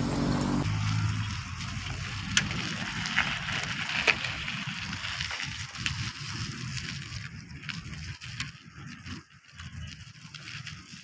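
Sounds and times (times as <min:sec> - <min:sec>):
road traffic hiss and rumble: 0:00.0 - 0:06.5.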